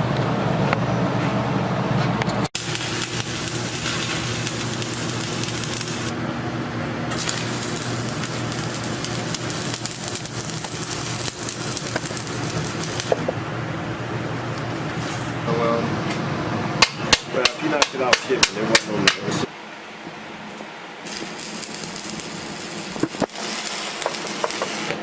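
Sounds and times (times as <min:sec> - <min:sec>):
steady low hum: 0:00.0 - 0:25.0
welding arc crackling and sizzling: 0:02.4 - 0:06.2, 0:07.0 - 0:13.3, 0:20.5 - 0:25.0.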